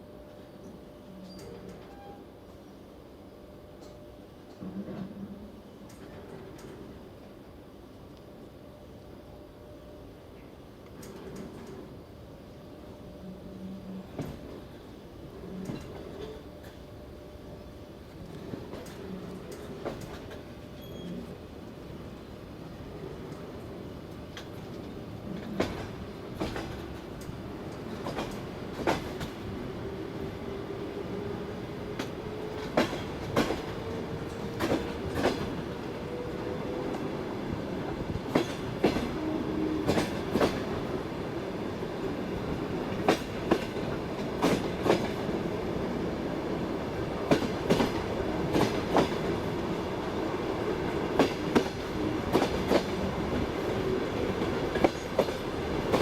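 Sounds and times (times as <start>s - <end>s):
train carriage rumbling on rails: 0.0s - 56.0s
wheels clacking over rail joints: 24.3s - 29.4s, 31.9s - 36.0s, 38.1s - 39.2s, 42.9s - 45.4s, 47.2s - 49.8s, 51.1s - 56.0s.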